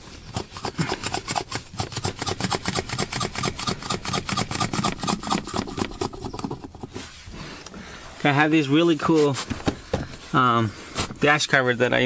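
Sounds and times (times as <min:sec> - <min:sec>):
rapid rasping strokes: 0:00.0 - 0:07.4.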